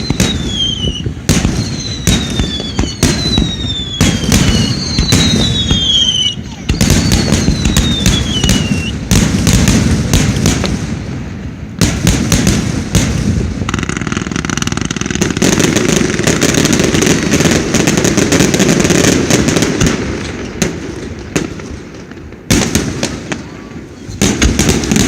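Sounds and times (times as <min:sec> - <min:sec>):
falling firework whistle: 0:00.0 - 0:09.1
fireworks bursting and crackling: 0:00.0 - 0:25.0.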